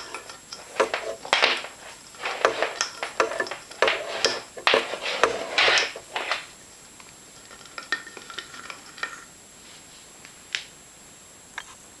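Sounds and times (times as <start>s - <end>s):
rustling: 0.0s - 6.6s.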